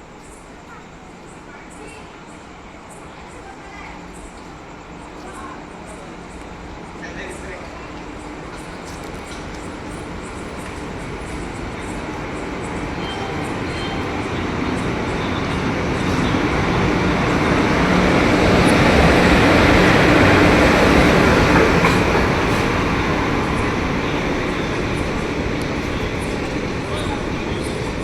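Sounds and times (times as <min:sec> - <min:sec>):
train rumbling past: 0:00.0 - 0:28.0
wheels clicking over rails: 0:07.6 - 0:28.0.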